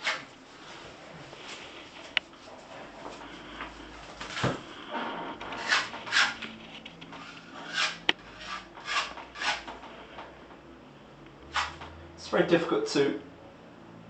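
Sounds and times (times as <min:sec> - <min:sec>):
filler knife scraping wall: 0:00.0 - 0:00.3, 0:04.3 - 0:10.3, 0:11.5 - 0:11.9.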